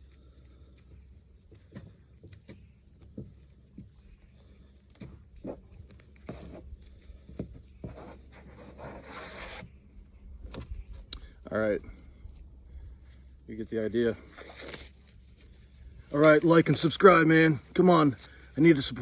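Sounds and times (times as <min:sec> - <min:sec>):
feathers snapping and ripping: 0:14.3 - 0:15.2.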